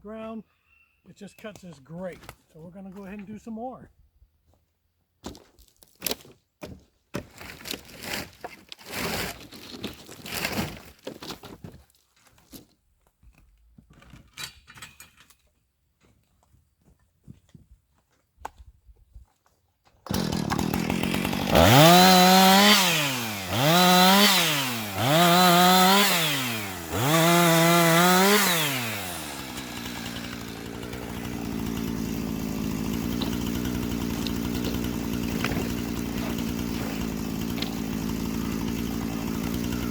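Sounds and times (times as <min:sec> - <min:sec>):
chainsaw cutting through slabs: 0:07.2 - 0:10.9, 0:20.0 - 0:39.9
chainsaw revving and idling: 0:20.1 - 0:39.9.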